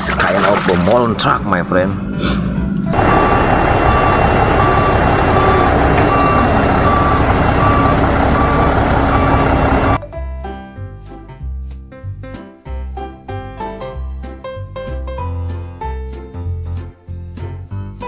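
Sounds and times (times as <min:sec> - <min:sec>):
music: 0:00.0 - 0:03.0, 0:10.0 - 0:18.0
loud engine running: 0:01.6 - 0:10.0
truck reversing alarm beeping: 0:01.9 - 0:10.0.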